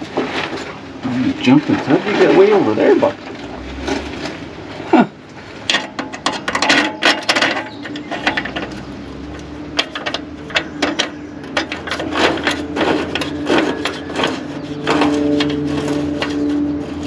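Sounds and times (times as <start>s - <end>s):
steady low hum: 0.0s - 17.0s
metal tools clinking: 5.7s - 17.0s.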